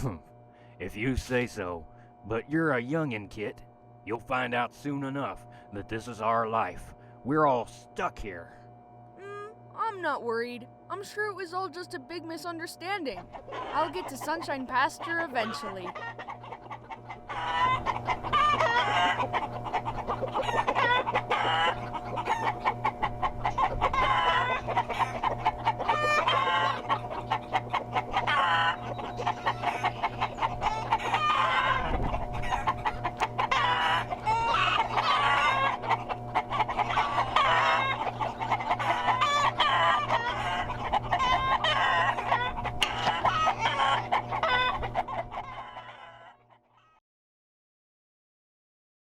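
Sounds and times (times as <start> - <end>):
chickens clucking: 9.8 - 47.0.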